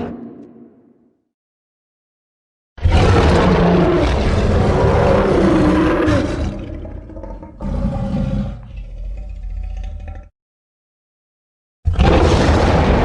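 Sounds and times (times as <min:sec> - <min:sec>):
big cat roaring: 0:02.8 - 0:10.3, 0:11.9 - 0:13.0.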